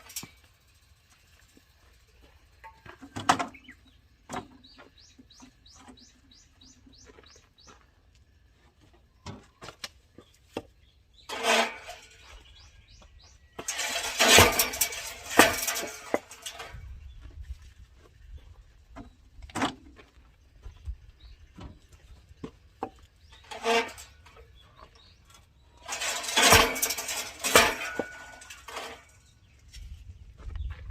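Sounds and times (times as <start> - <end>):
bird chirping: 3.5 - 7.9, 12.2 - 13.6.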